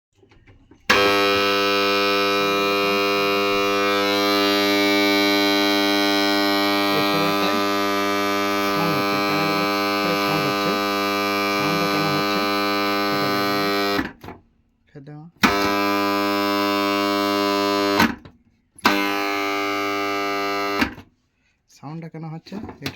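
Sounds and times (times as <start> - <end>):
loud electrical hum: 0.9 - 14.2, 15.4 - 18.2.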